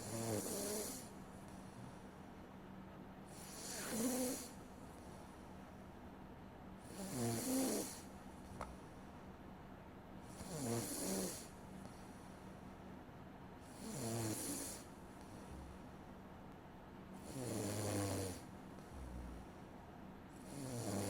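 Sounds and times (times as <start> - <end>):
person snoring: 0.0 - 1.1, 3.3 - 4.6, 6.9 - 8.1, 10.4 - 11.5, 13.7 - 15.8, 17.2 - 19.6, 20.4 - 21.0.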